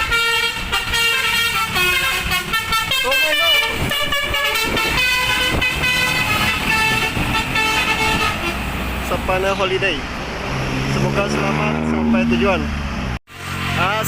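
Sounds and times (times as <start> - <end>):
musical bus horn tune: 0.0 - 8.9
bus engine rumble: 0.0 - 14.0.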